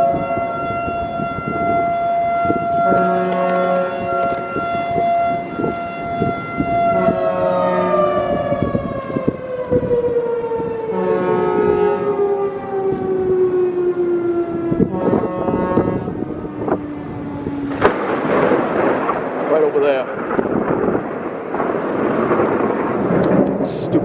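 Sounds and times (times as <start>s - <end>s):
mechanical fire siren wailing: 0.0s - 19.4s.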